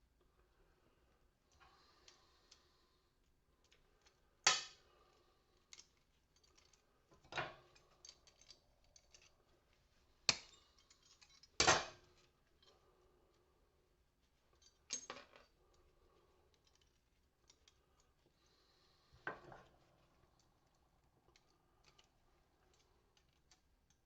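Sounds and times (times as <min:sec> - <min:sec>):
small hard parts rattling: 0:03.6 - 0:13.0.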